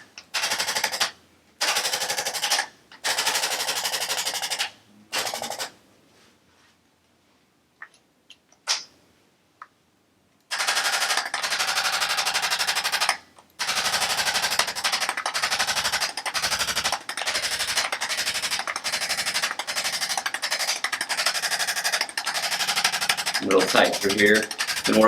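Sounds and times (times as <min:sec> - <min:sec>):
percussion massage tool hammering: 0:10.6 - 0:25.0.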